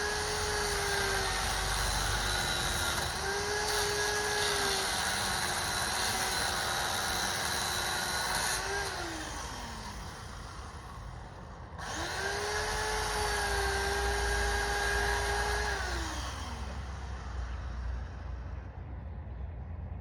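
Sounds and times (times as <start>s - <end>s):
chainsaw engine revving: 0.0s - 10.1s, 11.8s - 16.9s.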